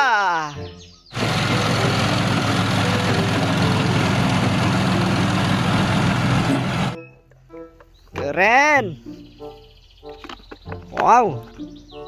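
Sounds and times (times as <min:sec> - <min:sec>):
engine hiss: 0:01.2 - 0:07.0
heavy engine rumbling: 0:01.2 - 0:07.0.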